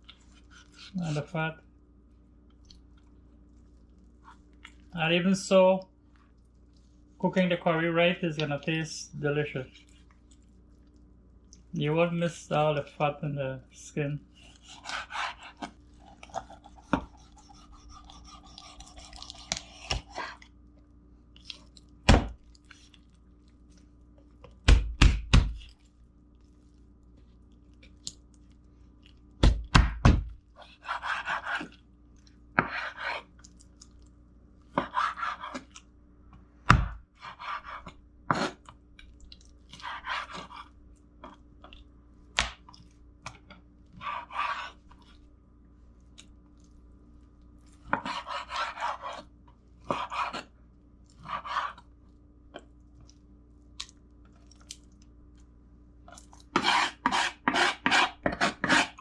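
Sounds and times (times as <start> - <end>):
knife scraping chicken skin: 14.4 - 20.4, 30.6 - 31.7, 39.7 - 40.7, 47.9 - 49.3, 56.5 - 59.0.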